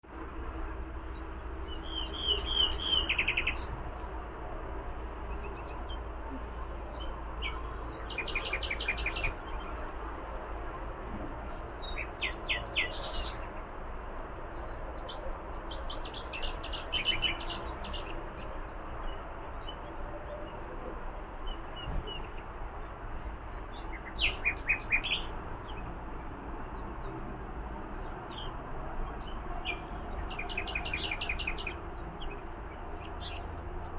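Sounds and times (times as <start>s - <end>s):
songbird trilling: 29.6s - 31.8s.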